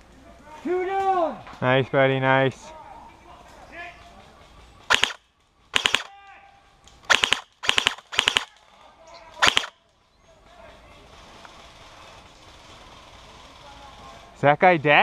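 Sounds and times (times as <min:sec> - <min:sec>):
airsoft rifle full-auto bursts: 0:04.9 - 0:06.1, 0:07.1 - 0:08.5, 0:09.4 - 0:09.7.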